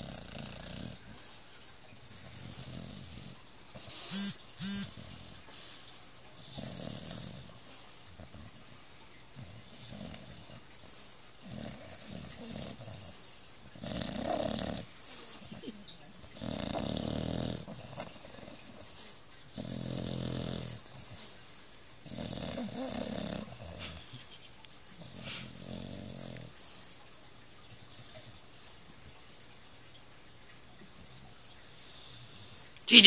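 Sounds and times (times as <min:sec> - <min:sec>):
pet snoring: 0:00.0 - 0:01.4, 0:02.1 - 0:05.5, 0:06.4 - 0:08.5, 0:09.4 - 0:10.6, 0:11.4 - 0:13.2, 0:13.8 - 0:15.5, 0:16.3 - 0:21.2, 0:22.0 - 0:24.0, 0:25.0 - 0:26.5
soft breaths: 0:25.1 - 0:25.6.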